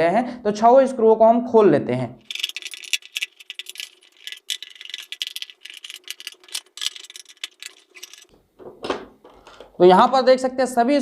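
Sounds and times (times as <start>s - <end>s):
screwdriver clicks and rattles: 2.2s - 8.3s.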